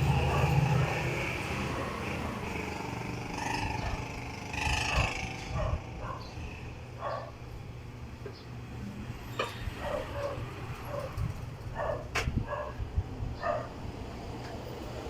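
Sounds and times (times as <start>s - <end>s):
ceiling fan motor hum: 0.0s - 15.0s.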